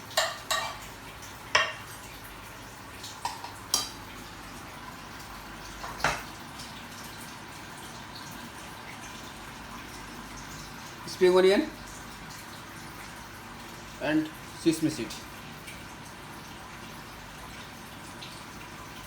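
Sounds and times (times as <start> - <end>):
utensils clinking on dishes: 0.2 - 0.8.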